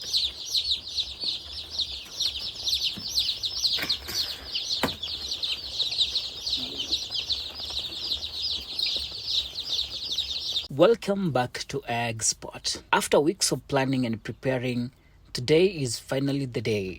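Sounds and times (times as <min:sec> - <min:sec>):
chicks peeping in chorus: 0:00.0 - 0:10.7.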